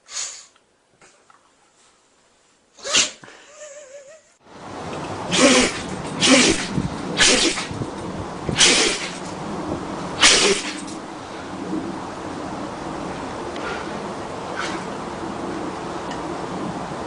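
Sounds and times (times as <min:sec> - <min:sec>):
person sneezing: 0:02.8 - 0:03.5, 0:05.3 - 0:07.7, 0:08.6 - 0:09.2, 0:10.2 - 0:10.8.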